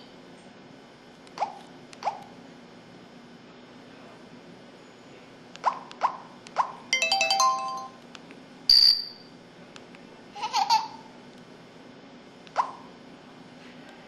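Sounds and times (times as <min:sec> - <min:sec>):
high chime: 0:07.0 - 0:08.0.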